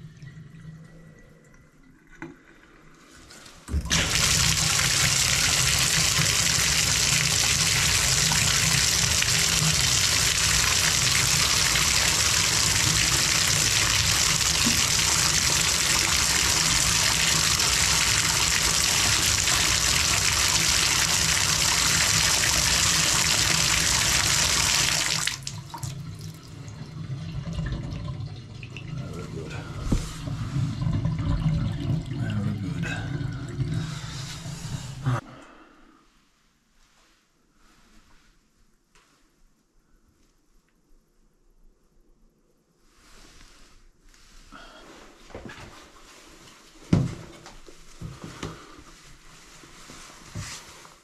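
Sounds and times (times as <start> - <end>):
faucet water running into tub: 3.7 - 34.7.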